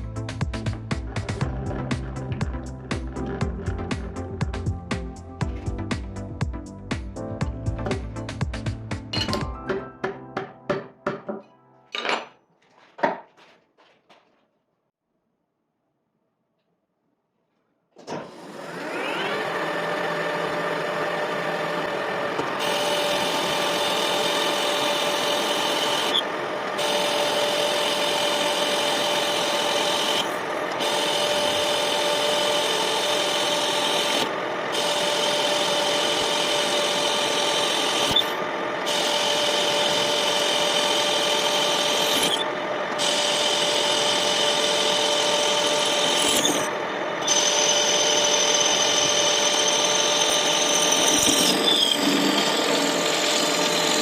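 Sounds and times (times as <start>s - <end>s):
lathe humming: 18.7s - 54.0s
rasping metal cutting: 18.7s - 54.0s.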